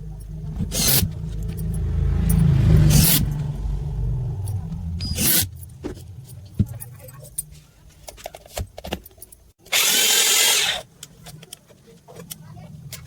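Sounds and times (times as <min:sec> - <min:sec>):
hammer drill whirring: 0:00.7 - 0:01.1, 0:09.6 - 0:10.9.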